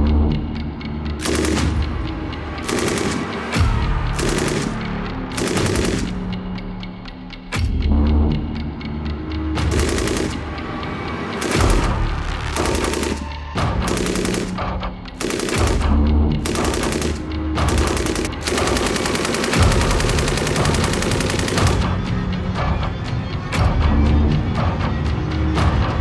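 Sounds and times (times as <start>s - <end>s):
background music: 0.0s - 26.0s
machine gun bursts: 1.2s - 1.8s, 2.6s - 3.5s, 4.2s - 6.3s, 9.7s - 10.4s, 11.4s - 14.6s, 15.2s - 21.9s.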